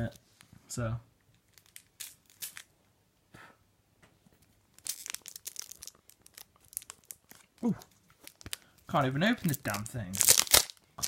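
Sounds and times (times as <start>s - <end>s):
plastic wrapper crinkling: 1.3s - 2.7s, 4.4s - 11.0s.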